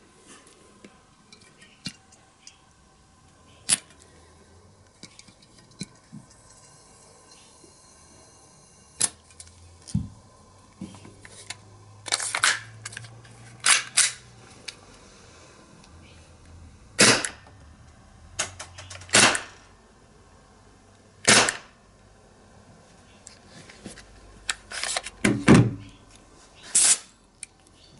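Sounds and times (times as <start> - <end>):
airsoft gun firing pops: 21.3 - 21.7.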